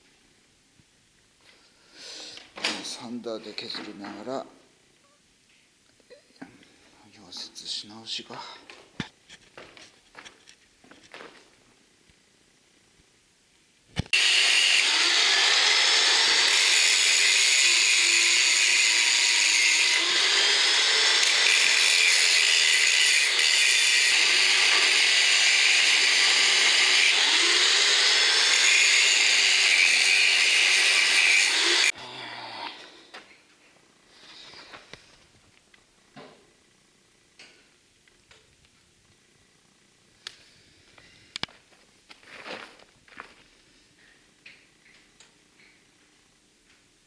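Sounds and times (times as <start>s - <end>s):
disc grinder grinding steel: 14.2s - 32.0s.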